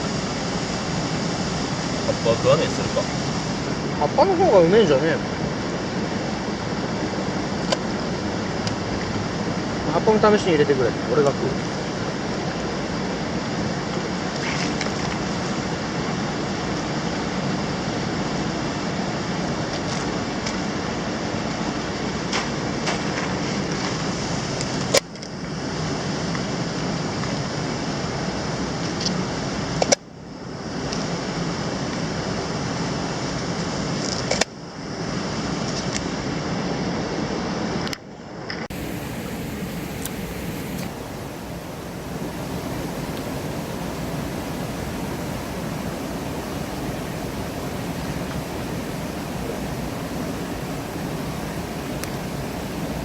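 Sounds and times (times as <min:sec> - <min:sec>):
stream water rushing: 0:00.0 - 0:22.6, 0:38.7 - 0:53.0.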